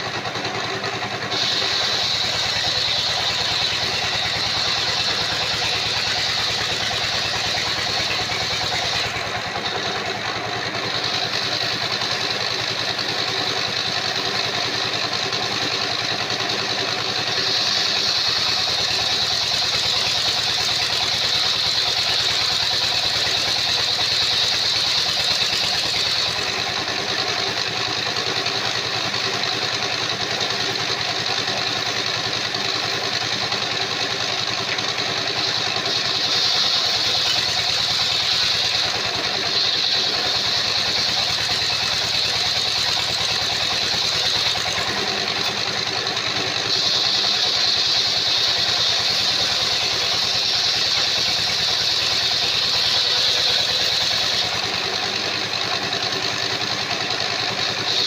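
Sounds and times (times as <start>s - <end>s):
sawmill engine running: 0.0s - 58.0s
high whine: 1.2s - 12.4s.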